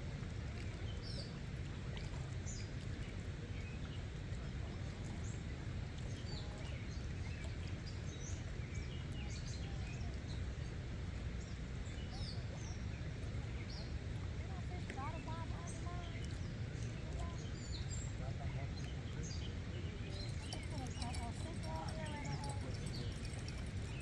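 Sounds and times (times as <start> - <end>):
birds chirping: 20.0 - 24.0.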